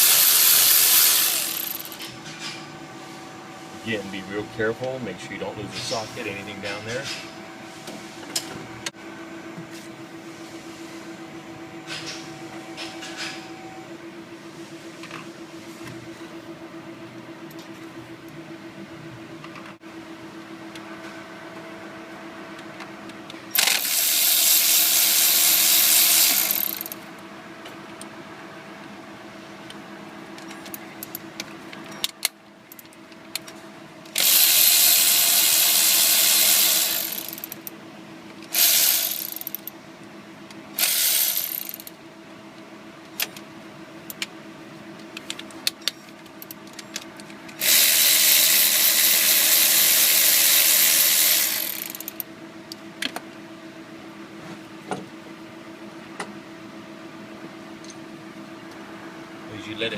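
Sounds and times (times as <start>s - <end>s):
steady low hum: 0.0s - 23.9s.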